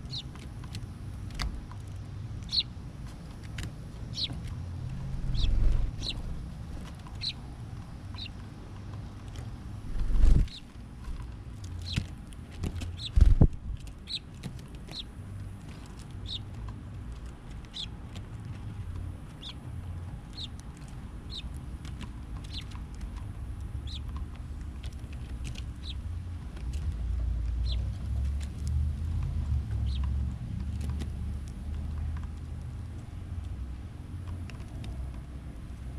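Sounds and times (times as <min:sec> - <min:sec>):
small bird chirping: 0:00.0 - 0:00.4, 0:01.9 - 0:02.8, 0:04.1 - 0:06.4, 0:07.1 - 0:07.5, 0:08.1 - 0:08.4, 0:09.9 - 0:10.7, 0:11.7 - 0:12.1, 0:12.8 - 0:15.2, 0:16.2 - 0:16.6, 0:17.7 - 0:18.0, 0:19.4 - 0:19.7, 0:20.3 - 0:21.6, 0:22.4 - 0:22.8, 0:23.8 - 0:24.2, 0:25.4 - 0:26.1, 0:27.6 - 0:27.9, 0:29.8 - 0:30.1
low rumble: 0:04.6 - 0:06.9, 0:09.8 - 0:10.6.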